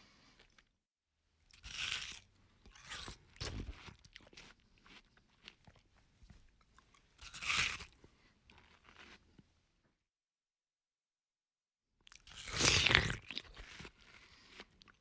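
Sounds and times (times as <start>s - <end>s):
person chewing crunchy food: 1.5s - 9.5s, 12.1s - 15.0s.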